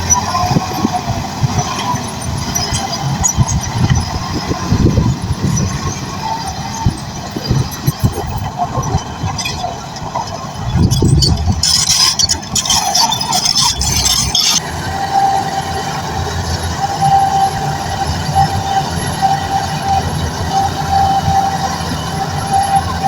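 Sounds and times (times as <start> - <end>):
bulldozer diesel engine running: 0.0 - 23.0
high whine: 0.0 - 23.0
hissing rattling noise: 3.5 - 14.6.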